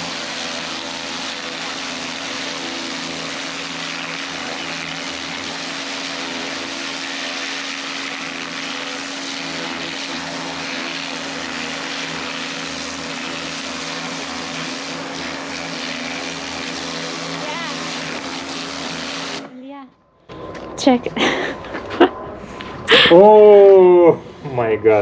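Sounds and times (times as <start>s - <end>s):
water jet hissing: 0.0s - 19.5s
pressure washer motor hum: 0.0s - 19.6s.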